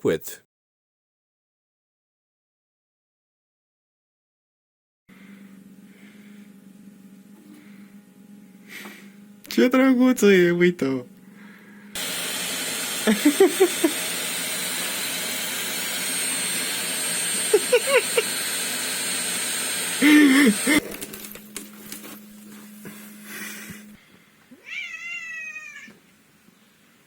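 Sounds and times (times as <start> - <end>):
loud hiss-like noise: 12.0 - 20.8
cat meowing: 24.6 - 26.0.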